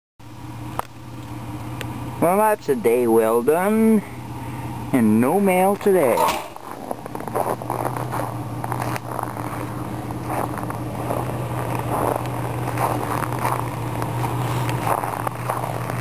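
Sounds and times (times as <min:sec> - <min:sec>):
engine droning: 0:00.2 - 0:16.0
footsteps crunching in snow: 0:06.3 - 0:16.0.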